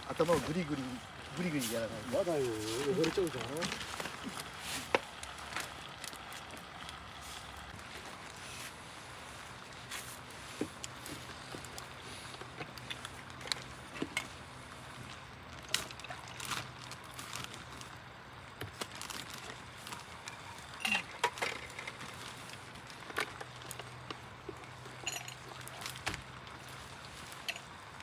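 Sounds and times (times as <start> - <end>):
glassware and ice clinking: 20.3 - 22.0, 24.9 - 25.9, 27.4 - 27.7.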